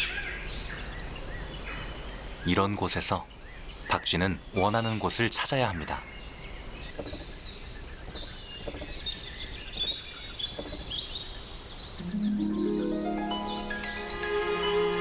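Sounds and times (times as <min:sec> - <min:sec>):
insects trilling: 0:06.7 - 0:13.0
short chirps: 0:07.0 - 0:11.4, 0:12.0 - 0:13.0
music with sustained notes: 0:12.0 - 0:15.0.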